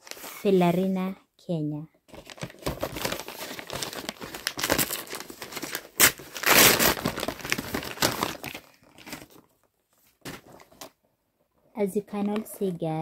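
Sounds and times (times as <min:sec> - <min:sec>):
wrapping crackling and tearing: 0:02.1 - 0:09.6.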